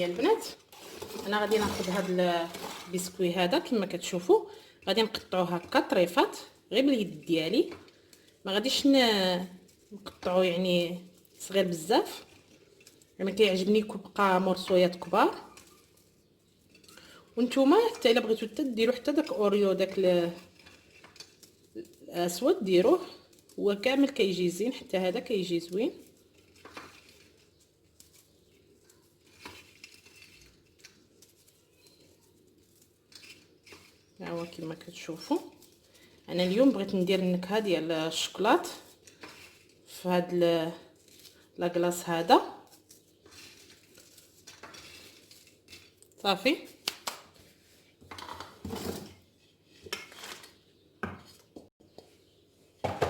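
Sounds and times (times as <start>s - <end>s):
spoon scraping a mixing bowl: 11.8s - 21.8s, 42.7s - 46.1s.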